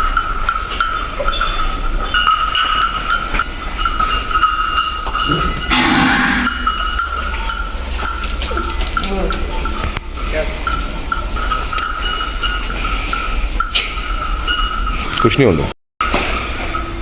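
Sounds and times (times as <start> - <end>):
cowbells clinking: 0.0 - 15.7
rushing noise: 5.7 - 7.0
steady high-pitched tone: 5.7 - 7.0.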